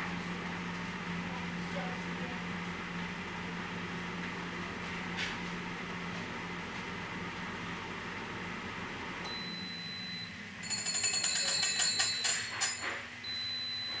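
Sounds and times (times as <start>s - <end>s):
air fryer fan humming: 0.0s - 14.0s
high steady beep: 9.3s - 14.0s
rapid metallic ringing: 10.6s - 13.0s.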